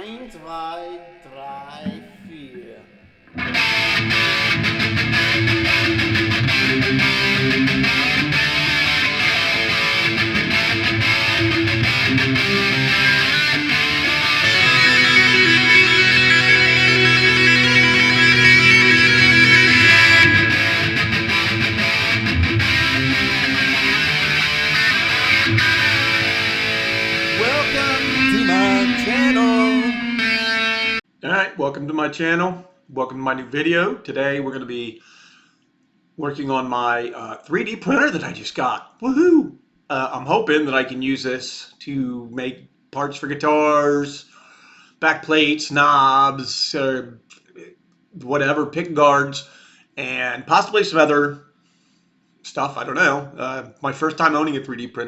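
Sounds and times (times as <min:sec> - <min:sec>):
heavy metal electric guitar music: 0:03.3 - 0:31.0.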